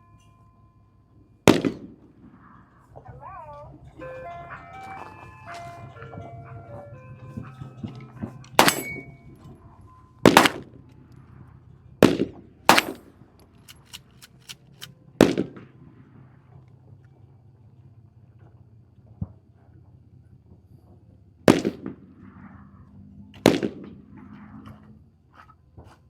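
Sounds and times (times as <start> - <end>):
close loud gunshots: 1.5 - 1.9, 8.6 - 9.1, 10.3 - 10.7, 12.0 - 13.0.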